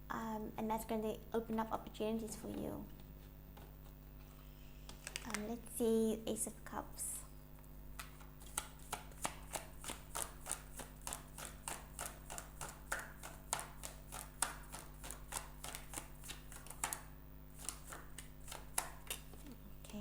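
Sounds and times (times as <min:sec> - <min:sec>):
cards being shuffled: 0:02.9 - 0:05.6, 0:08.0 - 0:20.0.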